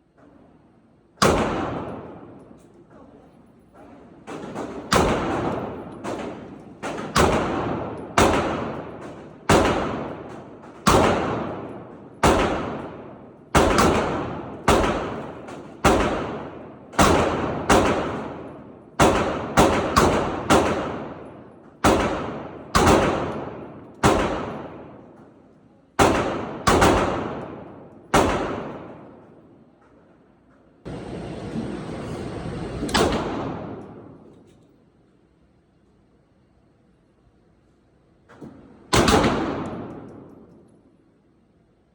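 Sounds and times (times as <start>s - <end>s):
gunshots with echo: 1.2s - 2.6s, 4.2s - 25.2s, 26.0s - 29.5s, 32.8s - 34.3s, 38.6s - 40.5s.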